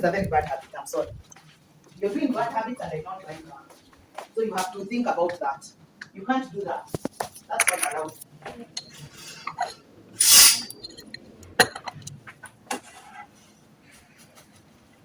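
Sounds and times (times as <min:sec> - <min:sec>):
cutlery and dishes clinking: 0:08.8 - 0:11.0.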